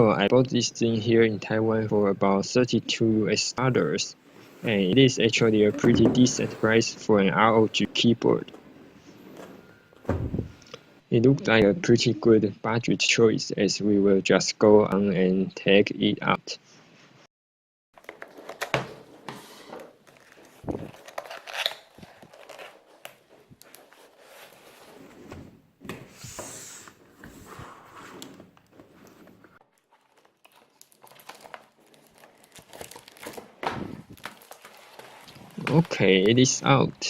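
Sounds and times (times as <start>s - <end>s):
cardboard packaging crinkling: 20.0s - 24.7s, 29.6s - 36.3s.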